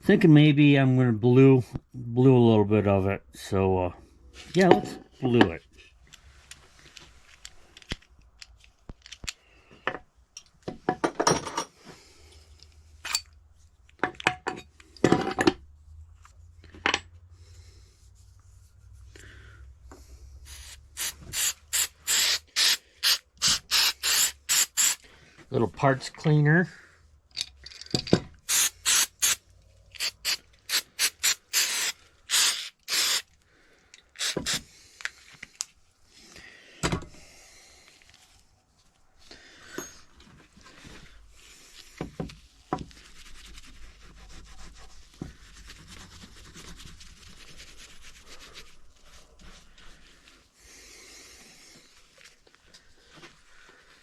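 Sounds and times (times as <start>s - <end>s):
scrubbing metal parts: 20.5s - 25.0s, 28.5s - 33.2s.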